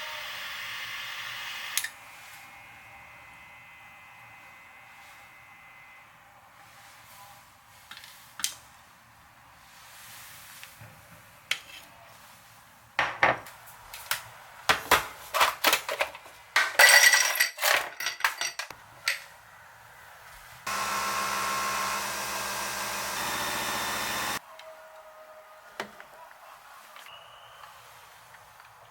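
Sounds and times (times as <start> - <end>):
small electric motor running: 0.0 - 3.8, 20.7 - 24.4
dishes and utensils clinking: 15.3 - 19.3.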